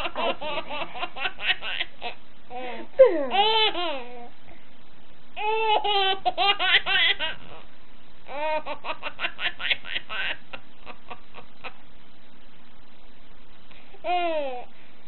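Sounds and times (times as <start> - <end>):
toddler giggling: 0.0 - 4.3.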